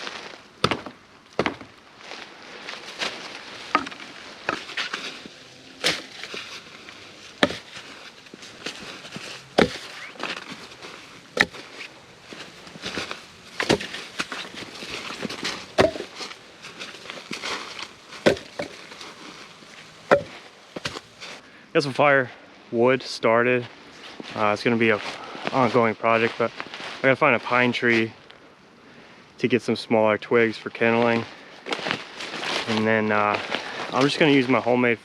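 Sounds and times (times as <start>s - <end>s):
rustling and scraping: 0.0s - 21.4s, 23.8s - 28.3s, 31.0s - 34.7s
firewood cracking and knocking: 0.6s - 1.8s, 3.0s - 21.2s.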